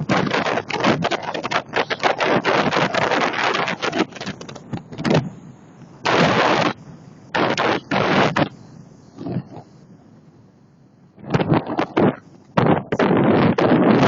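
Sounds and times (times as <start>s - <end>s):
strong wind: 0.0s - 5.4s, 6.0s - 8.6s, 11.2s - 14.0s
rough sea: 0.0s - 8.5s, 11.2s - 14.0s.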